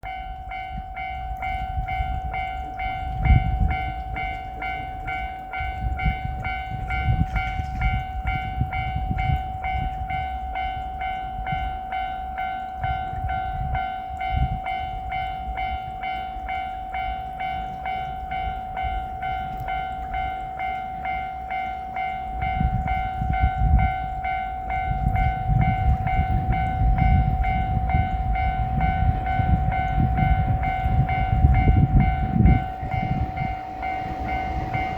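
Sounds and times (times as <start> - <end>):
level-crossing alarm ringing: 0.0 - 34.9
low rumble: 22.4 - 34.9.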